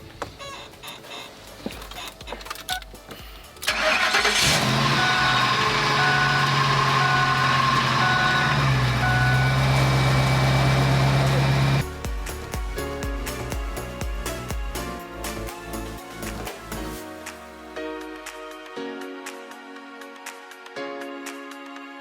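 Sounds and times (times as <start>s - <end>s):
pickup engine cranking and idling: 3.6s - 11.8s
warning chime beeping: 4.4s - 11.8s.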